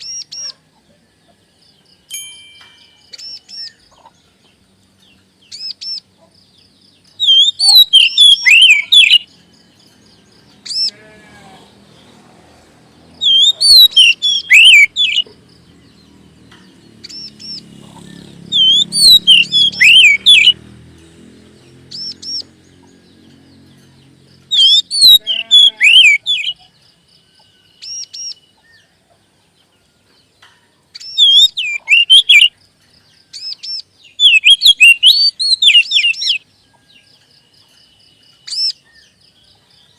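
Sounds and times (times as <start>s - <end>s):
bird singing whistled notes: 2.0s - 3.9s, 7.0s - 10.9s, 13.2s - 15.3s, 18.4s - 20.7s, 24.4s - 28.8s, 31.0s - 32.6s, 33.3s - 39.2s
single bird calls: 7.2s - 9.3s, 13.2s - 15.3s, 24.5s - 26.6s.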